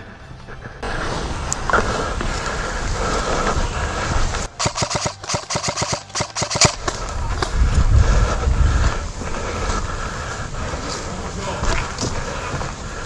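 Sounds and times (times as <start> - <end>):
airsoft gun firing: 4.5 - 7.0.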